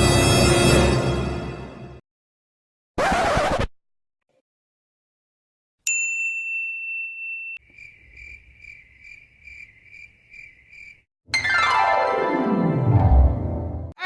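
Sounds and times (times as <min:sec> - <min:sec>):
small bell ringing: 0:05.8 - 0:07.6
cricket chirping: 0:07.6 - 0:11.0.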